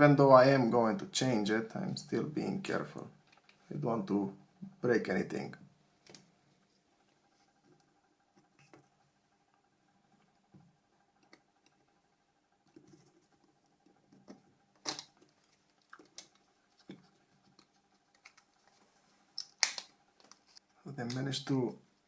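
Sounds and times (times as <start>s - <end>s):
plastic phone parts clicking and scraping: 14.1s - 21.3s.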